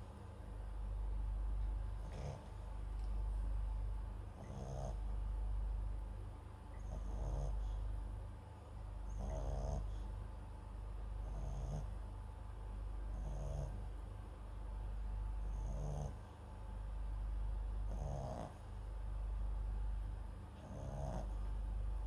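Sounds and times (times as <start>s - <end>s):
dog snoring with whistling note: 4.4s - 5.0s, 6.8s - 7.8s, 9.1s - 10.0s, 11.2s - 11.9s, 13.2s - 13.7s, 15.5s - 16.1s, 17.9s - 18.6s, 20.6s - 21.3s.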